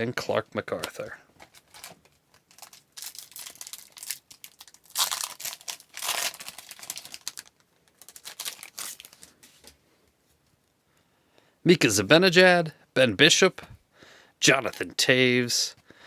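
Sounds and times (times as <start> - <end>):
foil wrapper crinkling and tearing: 0.8 - 9.7.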